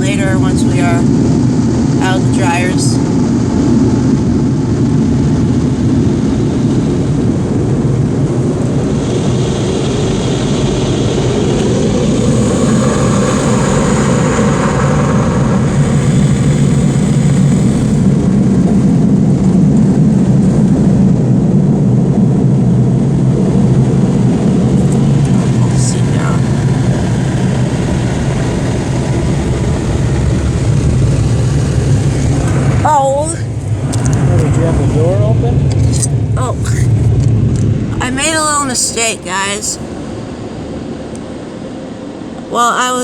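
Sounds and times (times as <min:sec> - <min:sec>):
car wash dryer blowers roaring: 0:00.0 - 0:43.0
hissing rush of air: 0:04.6 - 0:21.6.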